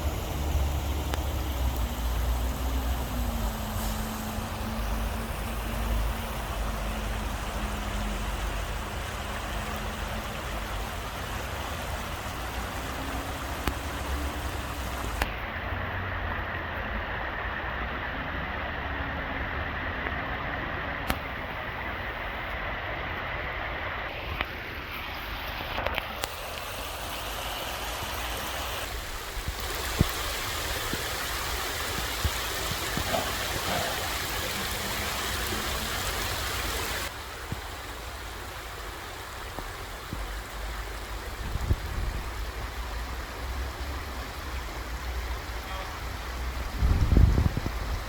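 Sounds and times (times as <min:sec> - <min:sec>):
stream water rushing: 0:00.0 - 0:48.0.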